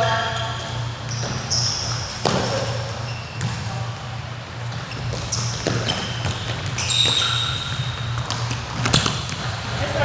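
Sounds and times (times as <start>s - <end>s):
sneaker squeaks: 0.0s - 10.0s
basketball bouncing on hardwood: 8.2s - 9.7s.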